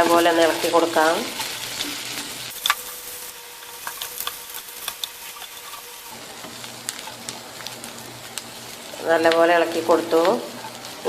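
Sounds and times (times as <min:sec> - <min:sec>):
meat sizzling in oil: 0:00.0 - 0:11.0
spoon scraping a pan: 0:00.2 - 0:07.4, 0:10.5 - 0:11.0.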